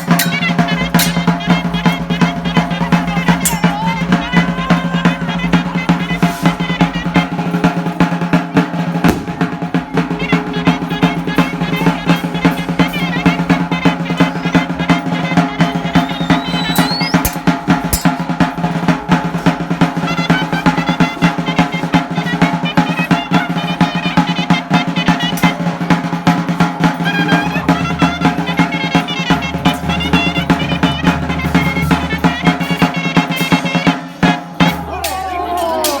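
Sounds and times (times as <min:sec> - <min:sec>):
wavering melody line: 0:00.0 - 0:07.6, 0:09.4 - 0:18.2
fast continuous drumming: 0:00.0 - 0:36.0.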